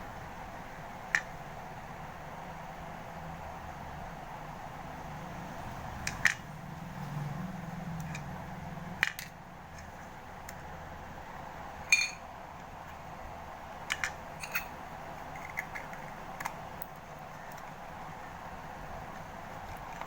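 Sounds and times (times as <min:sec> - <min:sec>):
steady low hum: 0:00.0 - 0:20.0
sharp clink with ring: 0:11.9 - 0:12.2
hard objects clicking and tapping: 0:13.9 - 0:14.7.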